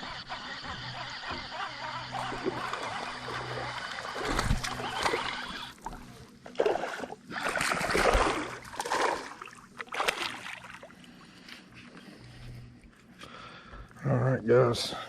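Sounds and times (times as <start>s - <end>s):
fish thrashing and splashing water: 2.1s - 11.2s.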